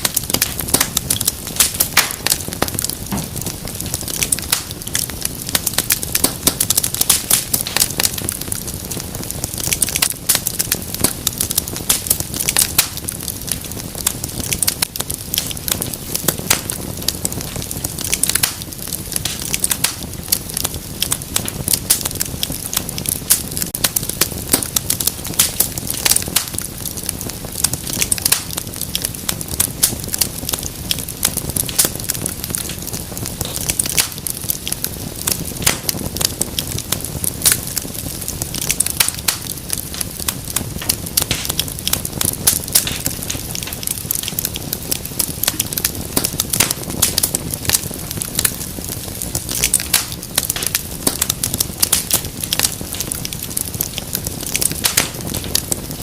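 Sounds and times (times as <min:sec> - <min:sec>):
fire crackling and popping: 0:00.0 - 0:56.0.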